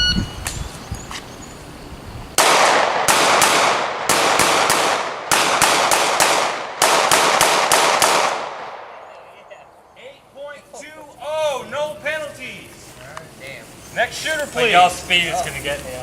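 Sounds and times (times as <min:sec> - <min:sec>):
pistol shots with echo: 0:02.4 - 0:09.4.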